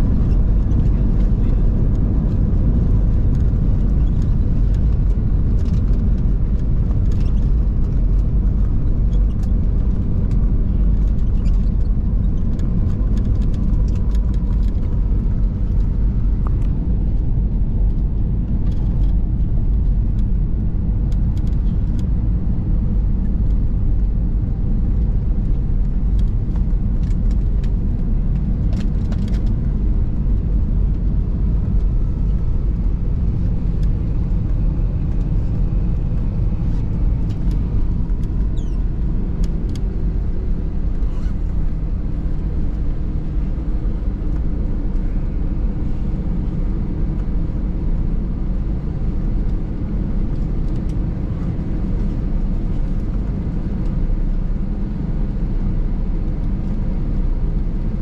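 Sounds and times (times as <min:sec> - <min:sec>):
airplane cabin rumble: 0:00.0 - 0:58.0.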